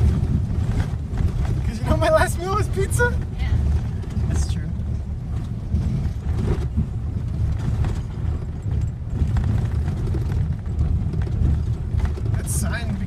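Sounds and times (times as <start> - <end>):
truck body creaks and rattles: 0.0 - 13.0
truck rumbling on dirt trail: 0.0 - 13.0.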